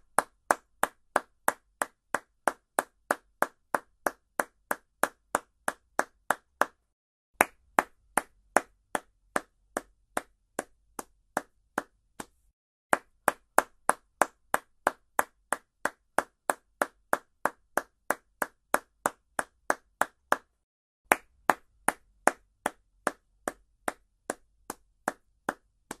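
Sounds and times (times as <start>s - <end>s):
hand clapping: 0.0s - 26.0s.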